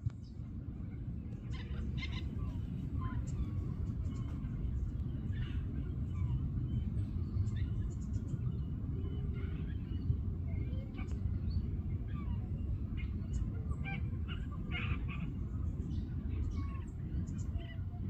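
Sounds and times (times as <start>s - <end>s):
steady low rumble: 0.0s - 18.0s
waterbirds honking and chirping: 0.9s - 18.0s.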